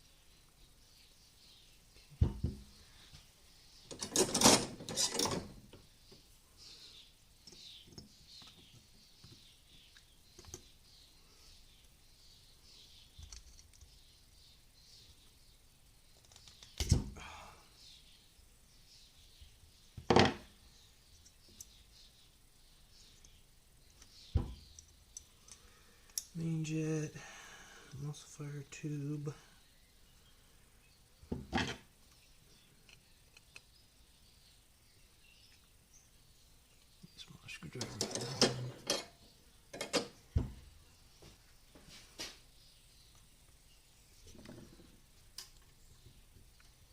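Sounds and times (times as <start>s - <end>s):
small metal parts clattering: 3.9s - 5.5s
small metal parts clicking: 24.7s - 26.3s.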